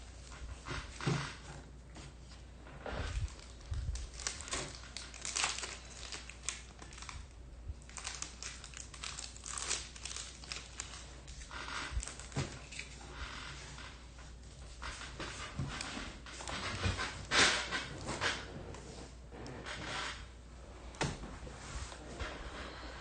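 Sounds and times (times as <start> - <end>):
plastic wrapping crinkling: 3.0 - 13.9.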